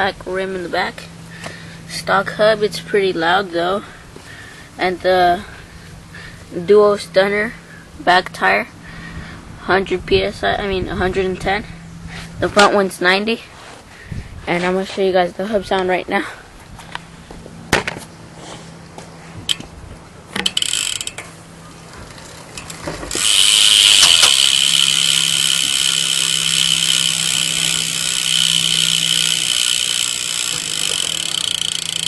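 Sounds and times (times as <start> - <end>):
bike hub ratcheting buzz: 20.3 - 32.0.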